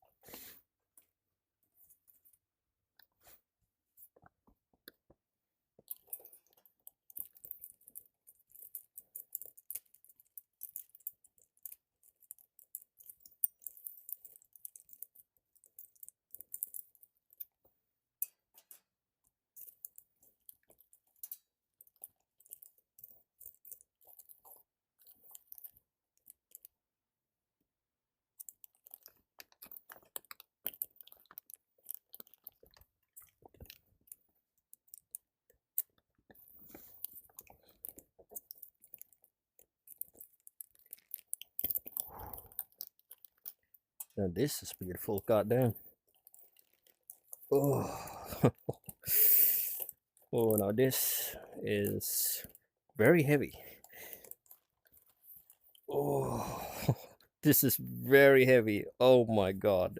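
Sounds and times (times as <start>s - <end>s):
faint packaging crinkling and clicking: 5.8s - 26.8s, 28.3s - 47.5s, 48.3s - 55.9s.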